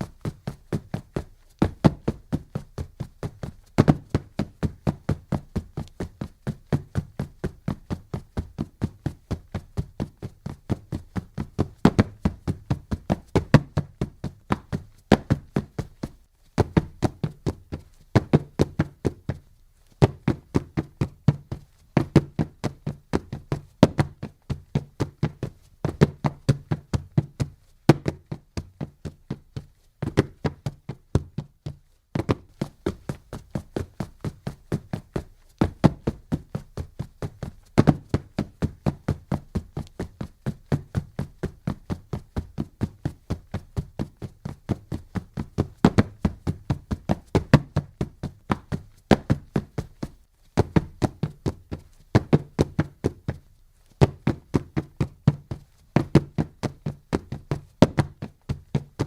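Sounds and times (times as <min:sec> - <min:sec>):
running footsteps on a track: 0:00.0 - 0:59.0.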